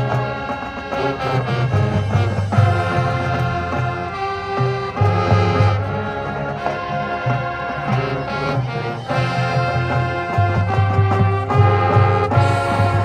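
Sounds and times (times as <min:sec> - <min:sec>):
brass and woodwind chords: 0:00.0 - 0:13.0
low brass and percussion beat: 0:00.0 - 0:13.0.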